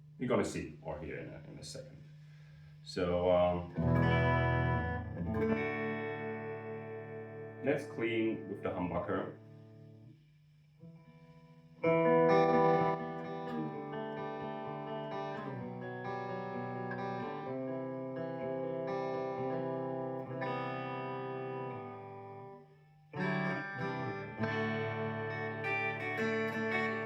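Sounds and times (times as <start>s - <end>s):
clean electric guitar chords: 3.4s - 10.1s, 11.8s - 22.6s, 23.2s - 27.0s.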